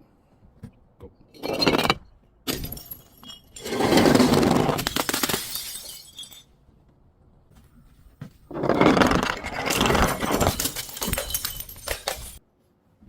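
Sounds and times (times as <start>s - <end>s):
glass bottle shattering: 1.4s - 6.6s, 8.8s - 12.4s.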